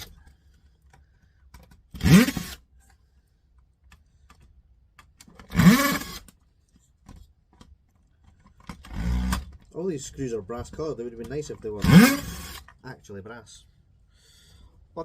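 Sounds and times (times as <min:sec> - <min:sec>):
power screwdriver spinning: 0:01.9 - 0:02.6, 0:05.4 - 0:06.3, 0:11.8 - 0:12.7.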